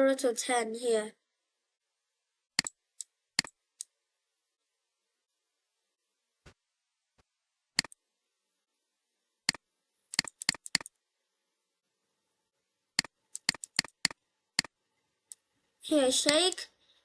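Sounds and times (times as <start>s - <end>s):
computer mouse clicking: 2.6s - 3.9s, 7.8s - 8.0s, 9.5s - 11.0s, 13.0s - 15.4s.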